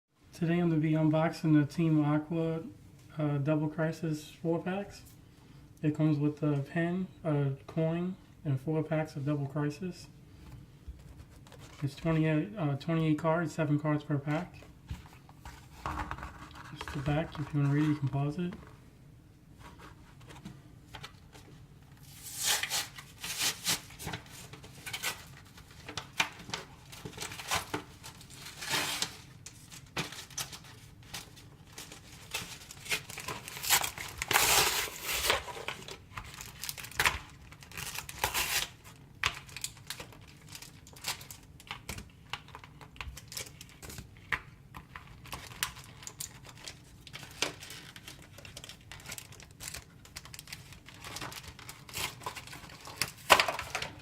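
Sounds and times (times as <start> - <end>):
packaging tearing and crinkling: 22.0 - 44.1, 44.9 - 54.0.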